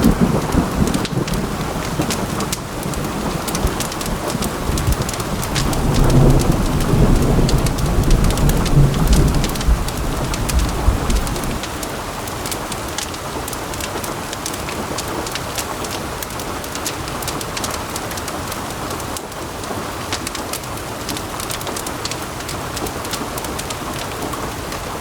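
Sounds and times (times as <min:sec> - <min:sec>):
low rumble of thunder: 0:00.0 - 0:11.7
heavy rain falling: 0:00.0 - 0:25.0.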